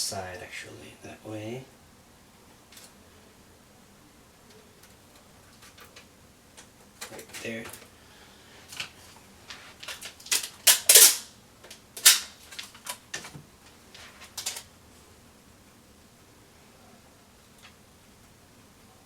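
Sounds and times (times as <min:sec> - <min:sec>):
tape ripping and rustling: 0:09.5 - 0:11.3, 0:12.0 - 0:13.2.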